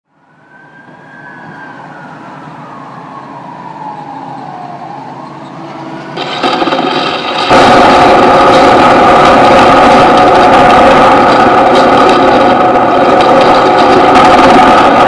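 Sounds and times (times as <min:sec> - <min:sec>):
whining sliding tone: 0:00.3 - 0:15.0
harsh buzzing drone: 0:05.6 - 0:15.0.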